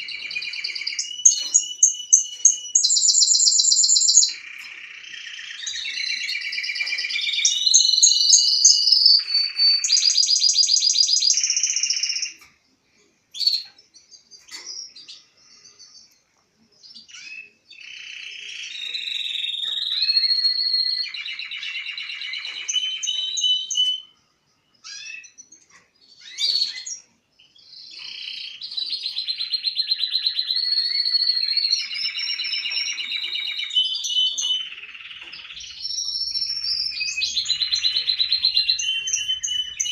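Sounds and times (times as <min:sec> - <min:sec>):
canary singing trills: 0:00.0 - 0:12.6, 0:13.3 - 0:39.9
bird chirps: 0:00.0 - 0:39.9.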